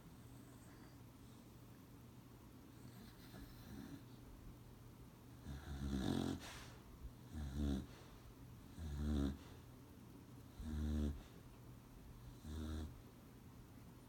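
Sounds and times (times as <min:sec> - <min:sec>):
dog snoring: 0:02.8 - 0:04.2, 0:05.4 - 0:08.1, 0:08.7 - 0:09.6, 0:10.5 - 0:11.4, 0:12.2 - 0:13.0.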